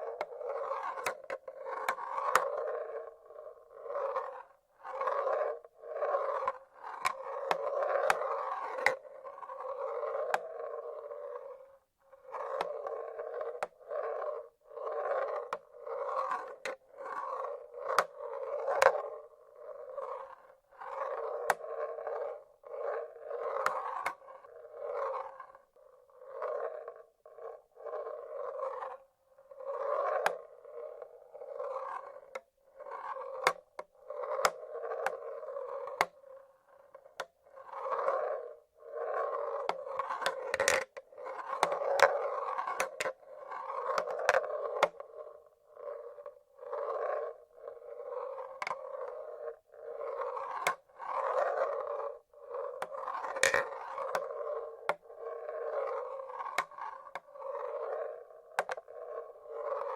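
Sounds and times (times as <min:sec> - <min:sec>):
marbles rolling on wooden tracks: 0:00.0 - 0:59.9
marbles clicking against wood: 0:58.5 - 0:59.0.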